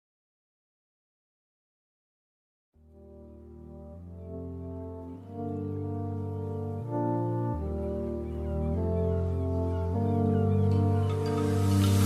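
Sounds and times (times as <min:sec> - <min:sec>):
music with held notes: 0:02.8 - 0:12.0.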